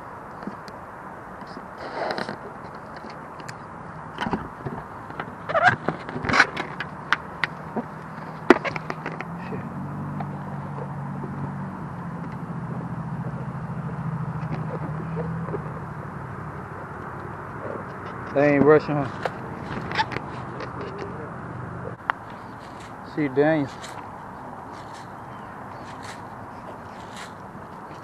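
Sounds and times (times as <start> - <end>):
sharp clicks and snaps: 2.1 - 3.6
vehicle engine humming: 2.4 - 28.0.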